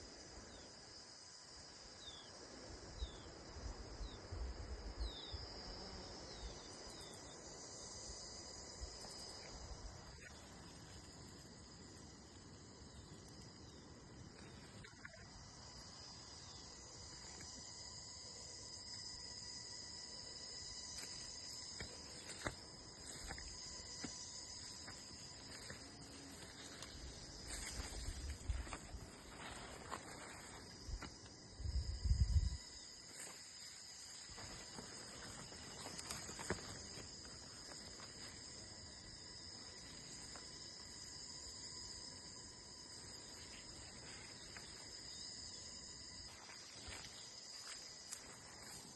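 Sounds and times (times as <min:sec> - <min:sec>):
crickets trilling: 0:00.0 - 0:48.9.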